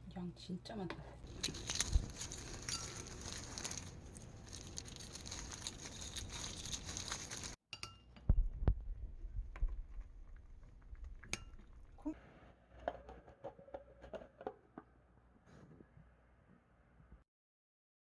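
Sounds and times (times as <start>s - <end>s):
food containers clinking: 1.2s - 7.6s
rustling of packaging: 1.2s - 7.6s.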